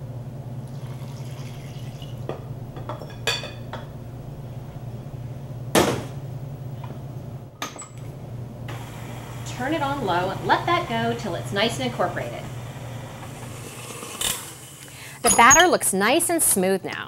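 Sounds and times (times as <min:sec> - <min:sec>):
steady low hum: 0:00.0 - 0:13.8
container clinking against bowl: 0:15.3 - 0:15.8.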